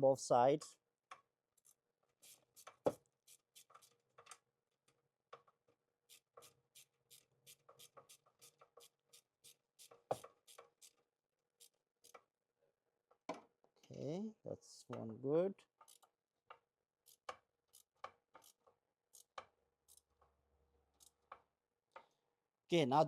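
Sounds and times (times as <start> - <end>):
ratchet wrench clicking: 6.1 - 11.0, 15.8 - 16.1, 17.0 - 20.1.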